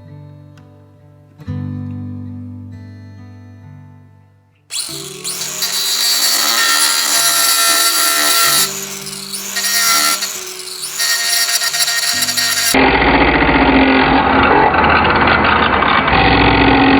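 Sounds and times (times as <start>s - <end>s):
power tool running under load: 4.7s - 12.8s.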